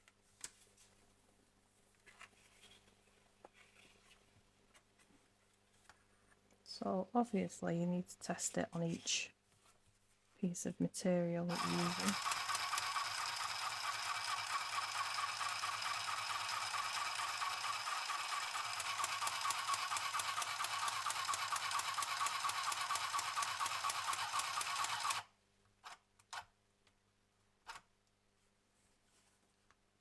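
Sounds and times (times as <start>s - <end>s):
sewing machine stitching: 11.5s - 26.4s.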